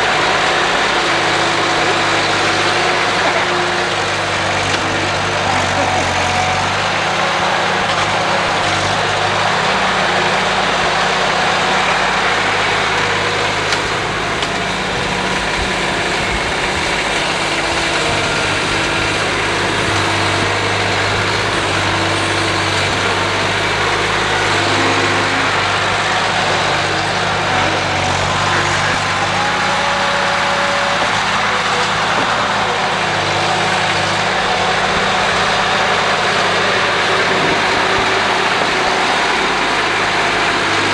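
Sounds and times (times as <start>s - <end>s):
snowplow engine running: 0.0s - 40.9s.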